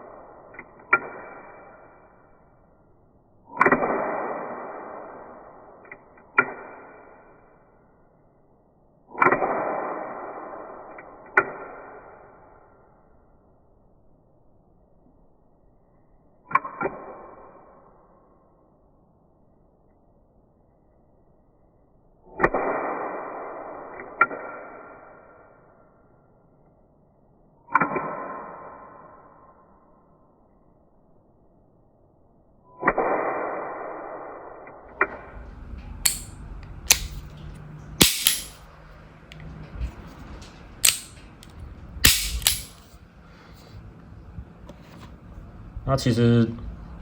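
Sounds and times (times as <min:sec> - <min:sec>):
sharp metallic click: 0:36.0 - 0:38.7, 0:40.8 - 0:43.0
toy gun click: 0:36.1 - 0:36.3, 0:36.9 - 0:37.2, 0:38.0 - 0:38.6, 0:40.8 - 0:41.2, 0:42.1 - 0:42.8
toy revolver snap with ringing: 0:36.1 - 0:37.4, 0:38.0 - 0:38.6, 0:40.8 - 0:41.2, 0:42.1 - 0:42.9.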